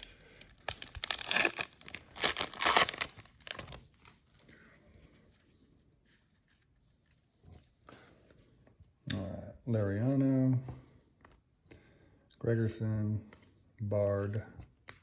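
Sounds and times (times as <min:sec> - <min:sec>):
wrapper tearing and crinkling: 0:00.0 - 0:04.2.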